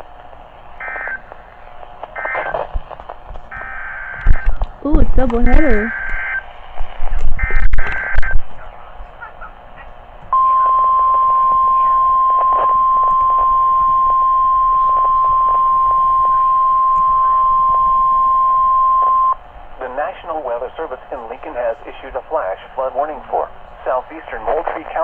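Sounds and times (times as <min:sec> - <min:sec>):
steady warning alarm tone: 0:03.5 - 0:06.5, 0:10.3 - 0:19.4.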